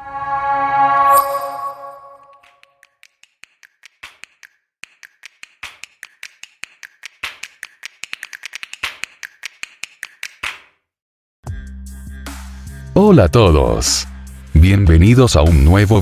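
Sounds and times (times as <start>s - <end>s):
rapid sharp clicks: 2.4s - 10.7s.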